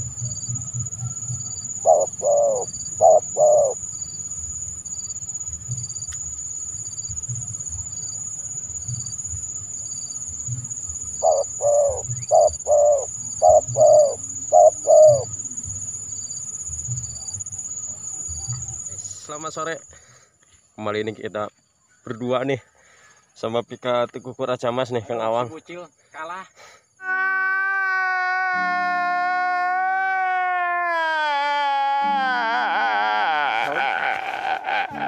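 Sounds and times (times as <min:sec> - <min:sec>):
dove cooing: 0:00.0 - 0:04.1, 0:11.1 - 0:15.5.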